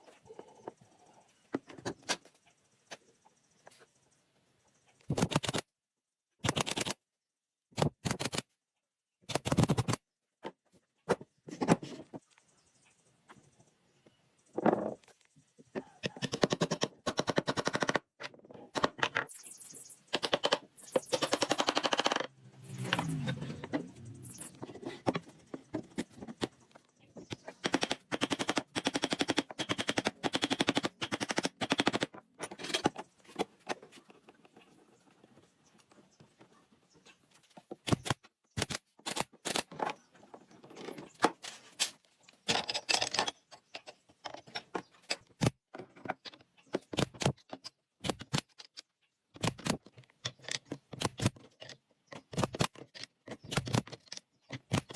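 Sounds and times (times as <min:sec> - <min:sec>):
rapid sharp clicks and knocks: 0:20.1 - 0:22.3.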